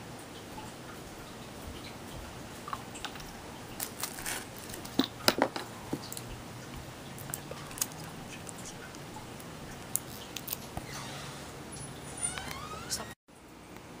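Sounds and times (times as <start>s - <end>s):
hands handling small hard objects: 3.0s - 6.2s
packaging rustling: 3.8s - 6.2s.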